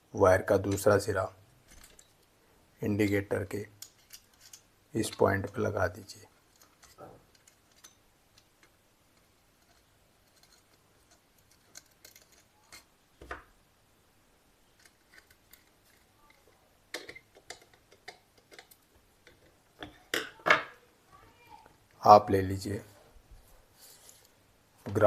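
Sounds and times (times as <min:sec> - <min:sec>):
hand tools clicking on terminals: 0:14.8 - 0:20.3.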